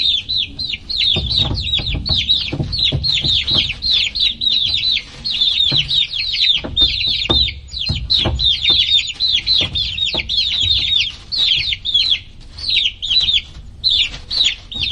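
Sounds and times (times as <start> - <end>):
soft knocks: 0.0 - 12.1, 14.2 - 14.9
baby chicks peeping: 0.0 - 14.9.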